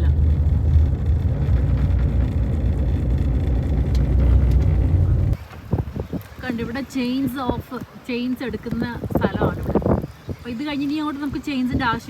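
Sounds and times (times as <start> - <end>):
car with snow chains rumbling: 0.0 - 5.9.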